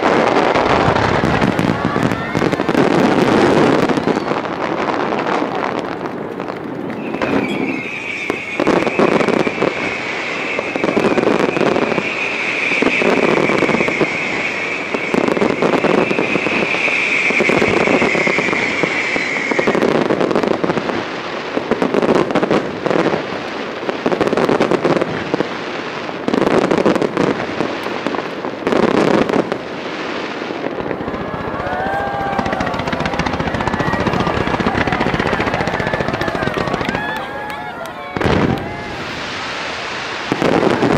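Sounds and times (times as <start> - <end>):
fireworks banging: 0.0 - 40.9
high whistle: 7.0 - 20.0.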